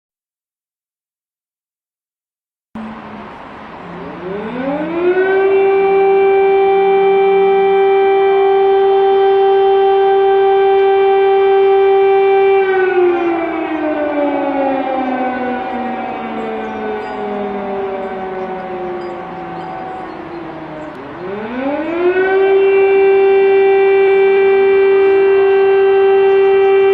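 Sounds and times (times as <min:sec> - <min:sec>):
air-raid siren wailing: 0:02.8 - 0:26.9.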